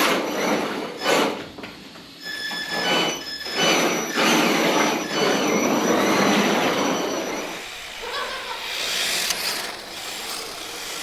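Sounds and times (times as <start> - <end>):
high motor whine: 4.9 - 11.0
toy car tyres scrubbing: 7.1 - 11.0.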